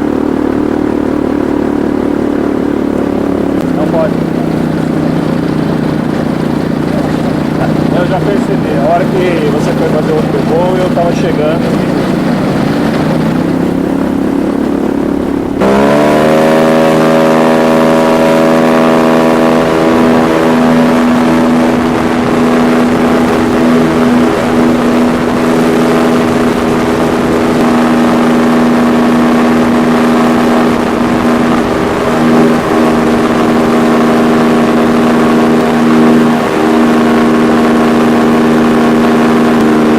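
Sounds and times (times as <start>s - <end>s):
paramotor engine revving: 0.0s - 39.9s.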